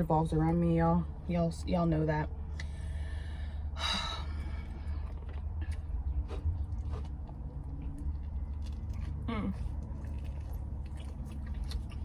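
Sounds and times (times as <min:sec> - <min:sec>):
car interior rumble: 0:00.0 - 0:12.0
person chewing: 0:04.8 - 0:12.0.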